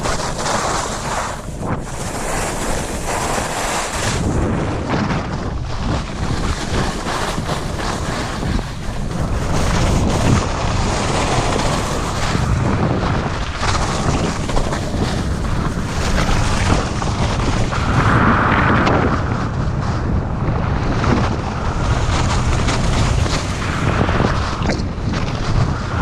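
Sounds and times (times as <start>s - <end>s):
skis hissing on snow: 0.0s - 4.3s
wind buffeting microphone: 0.0s - 26.0s.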